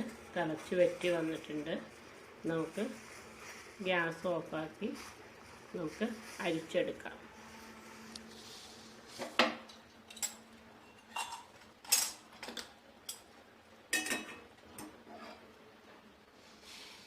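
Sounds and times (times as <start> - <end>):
kitchen utensils clinking: 10.1 - 13.3, 13.9 - 15.4.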